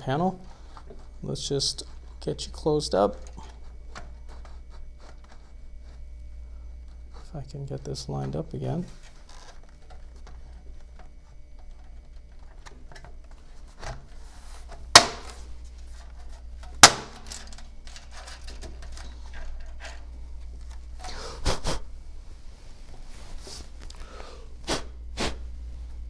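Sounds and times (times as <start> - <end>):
clips snapping: 15.0 - 15.4, 16.6 - 19.1.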